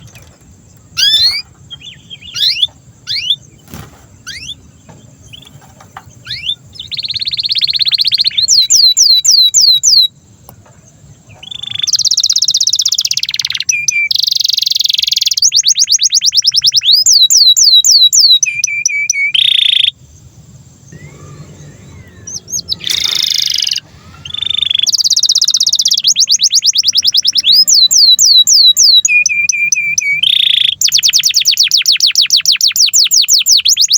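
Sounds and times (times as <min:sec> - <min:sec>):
canary singing: 0:00.0 - 0:10.2, 0:11.1 - 0:20.0, 0:20.8 - 0:33.9.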